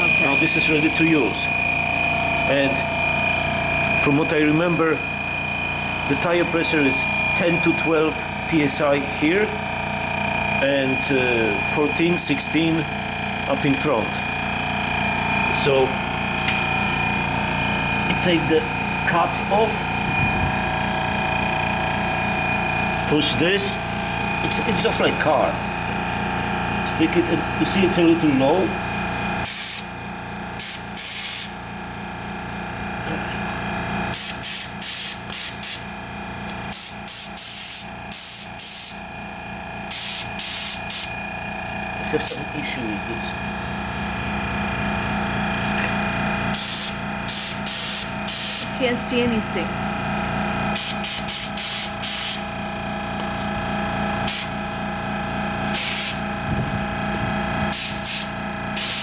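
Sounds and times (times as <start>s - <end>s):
air compressor humming: 0.0s - 59.0s
short air hissing bursts: 29.4s - 29.9s, 30.6s - 31.6s, 34.1s - 35.9s, 36.7s - 39.0s, 39.9s - 41.1s, 46.5s - 48.8s, 50.7s - 52.5s, 54.2s - 54.8s, 55.6s - 56.2s, 57.7s - 59.0s.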